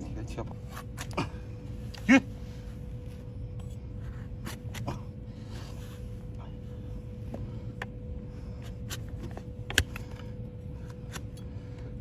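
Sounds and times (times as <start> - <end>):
faint steady hum: 0.0 - 12.0
low rumbling background: 0.0 - 12.0
hoof knife scraping hoof: 0.6 - 1.2, 3.6 - 5.0, 8.6 - 10.1.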